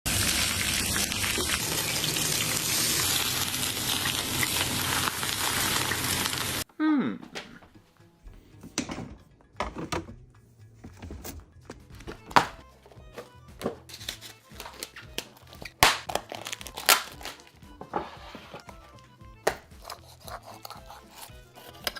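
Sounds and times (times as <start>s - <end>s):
fish scales sizzling in hot oil: 0.1s - 6.6s.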